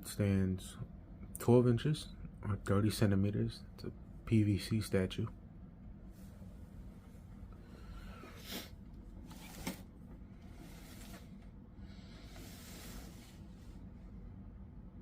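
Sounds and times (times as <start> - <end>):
low steady hum: 0.0 - 15.0
soft rustle: 8.1 - 13.9
hissing scrapes of a box: 11.9 - 13.6.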